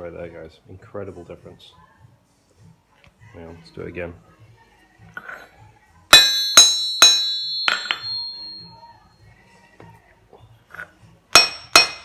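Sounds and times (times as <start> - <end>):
hammer striking anvil: 6.1 - 8.7, 11.4 - 12.0.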